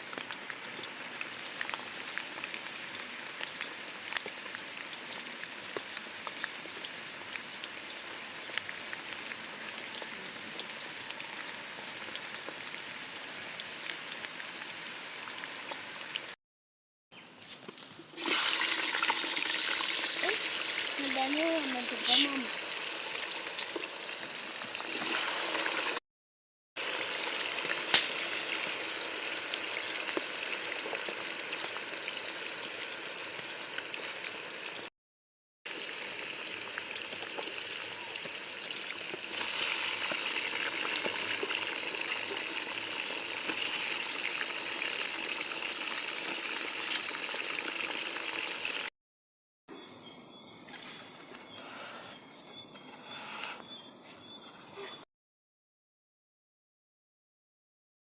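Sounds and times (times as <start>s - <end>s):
food sizzling in hot oil: 0.0s - 16.4s, 17.7s - 26.0s, 26.8s - 34.9s, 35.7s - 48.9s.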